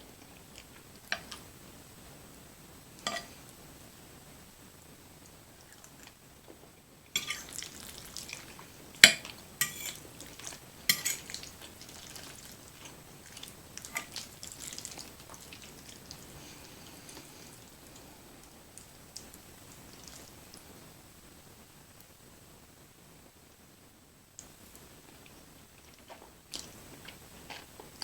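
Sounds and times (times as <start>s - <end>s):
cutlery clinking on a plate: 3.0s - 3.4s, 7.2s - 7.5s, 9.0s - 10.0s, 10.9s - 11.4s.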